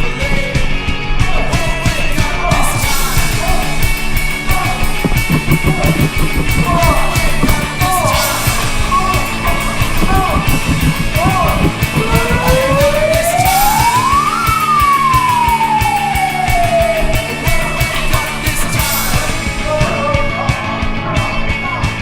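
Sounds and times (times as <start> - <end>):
punk rock music with singing: 0.0 - 22.0
rising siren-like tone: 5.0 - 8.2, 9.9 - 17.4.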